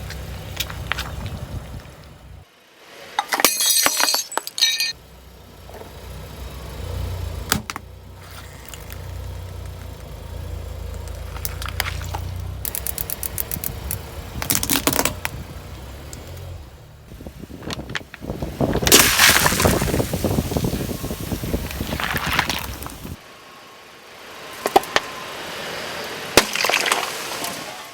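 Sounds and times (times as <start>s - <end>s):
car engine running slowly: 0.0s - 2.5s, 5.0s - 26.3s
tyres crushing objects: 26.4s - 27.5s.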